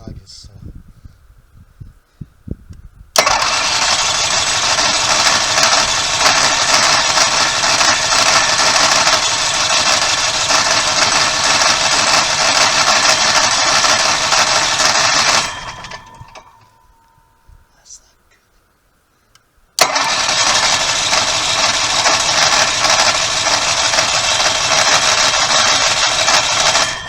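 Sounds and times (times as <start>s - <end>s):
generator engine running rattly: 3.2s - 16.9s, 19.8s - 27.0s.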